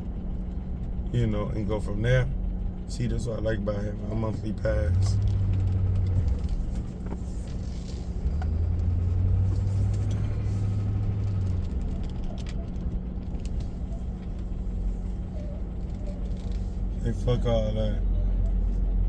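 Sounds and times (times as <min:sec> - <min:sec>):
car engine and road rumble: 0:00.0 - 0:19.0.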